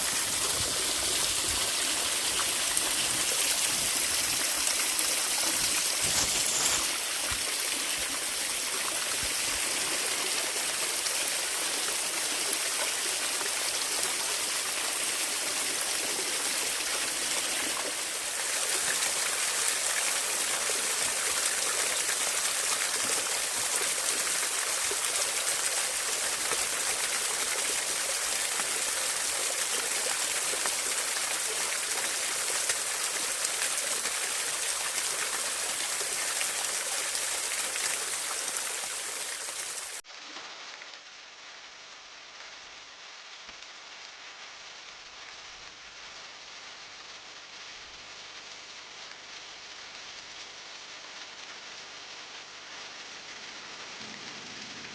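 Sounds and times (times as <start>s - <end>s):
water rushing: 0.0s - 40.0s.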